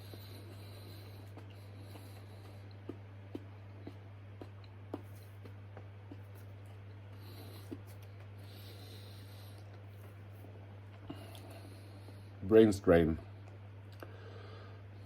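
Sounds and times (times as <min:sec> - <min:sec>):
mouth clicks while chewing: 0:00.0 - 0:08.6
steady low hum: 0:00.0 - 0:15.0.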